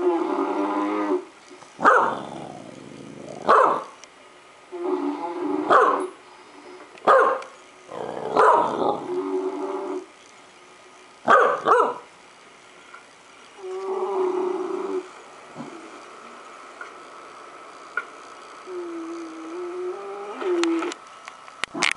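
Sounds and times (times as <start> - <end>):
recorded snoring: 0.0 - 1.3, 2.0 - 3.5, 4.7 - 5.7, 7.9 - 10.1, 13.6 - 16.1, 18.0 - 21.0
puppy barking: 1.8 - 2.4, 3.4 - 3.9, 5.7 - 6.1, 7.1 - 7.5, 8.3 - 8.8, 11.3 - 12.1.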